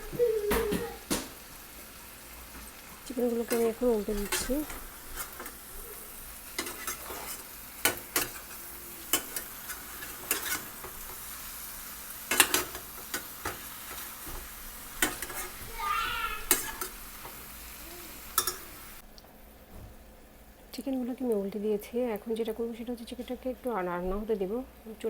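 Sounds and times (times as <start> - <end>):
chicken wings sizzling in pan: 0.0 - 19.0
utensil clicking against pan: 3.4 - 5.7, 6.5 - 11.2, 12.3 - 15.6, 16.4 - 17.4, 18.3 - 18.7.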